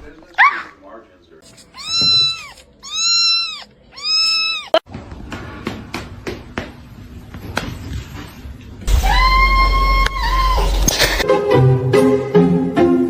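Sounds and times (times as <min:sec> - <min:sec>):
kitten meowing: 0:01.5 - 0:04.8.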